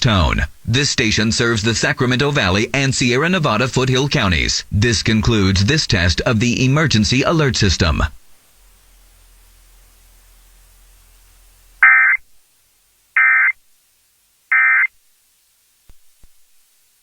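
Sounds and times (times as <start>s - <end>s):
faint low hum: 0.0s - 17.0s
buzzing digital data tones: 9.0s - 12.2s, 13.2s - 13.6s, 14.5s - 14.9s.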